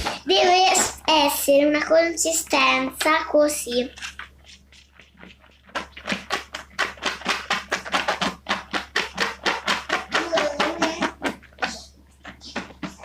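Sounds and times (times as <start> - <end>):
spoon stirring slime in bowl: 3.0 - 13.0.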